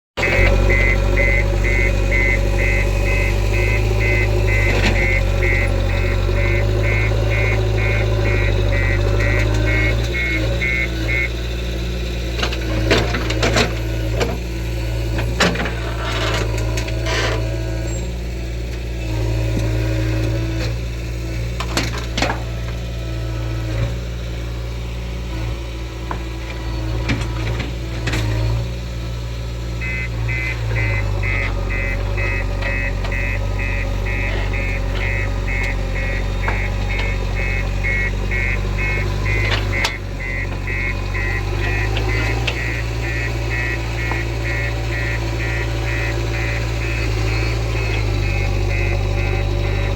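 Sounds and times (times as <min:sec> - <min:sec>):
diesel engine running: 0:00.0 - 0:49.9
warning beeper: 0:00.2 - 0:11.9, 0:29.8 - 0:49.9.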